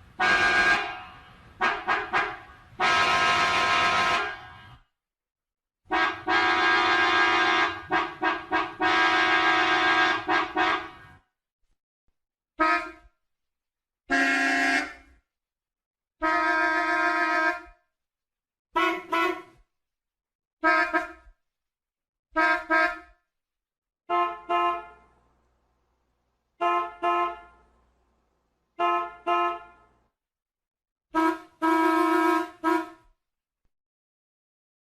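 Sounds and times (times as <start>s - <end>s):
car horns honking: 0.0s - 4.8s, 5.9s - 11.2s, 12.6s - 13.0s, 14.1s - 15.1s, 16.2s - 17.7s, 18.8s - 19.6s, 20.6s - 21.2s, 22.4s - 23.1s, 24.1s - 25.2s, 26.6s - 27.7s, 28.8s - 30.0s, 31.2s - 33.0s.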